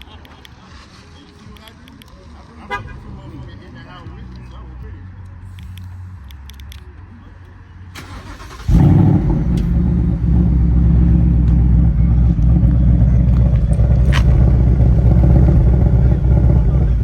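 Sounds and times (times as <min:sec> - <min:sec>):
car engine starting and idling: 0:07.9 - 0:17.0.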